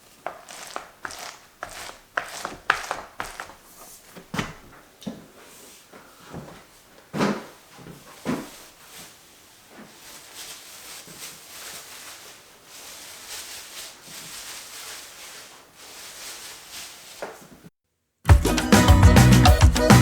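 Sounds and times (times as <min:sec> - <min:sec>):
rustling: 0:00.0 - 0:17.7
loud music with plucked guitar: 0:18.3 - 0:20.0.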